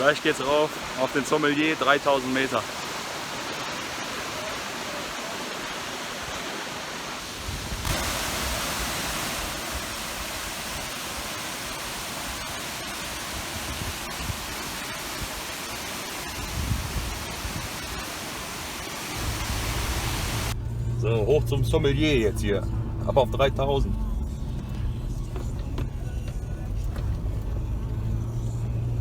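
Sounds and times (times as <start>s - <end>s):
waterfall rushing: 0.0s - 20.6s.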